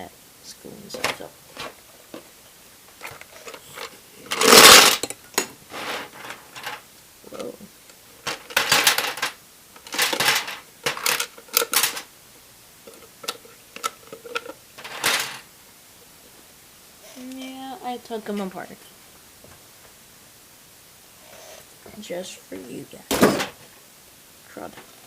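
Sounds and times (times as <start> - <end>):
plastic pieces clattering: 3.0 - 6.8, 8.2 - 12.1, 12.8 - 15.4.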